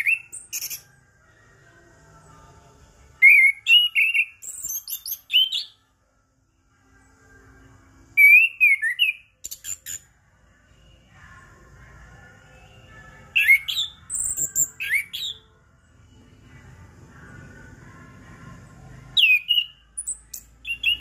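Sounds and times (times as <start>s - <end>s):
bird whistling and chirping: 0.0s - 0.8s, 3.2s - 5.8s, 8.2s - 10.0s, 13.3s - 15.4s, 19.2s - 21.0s.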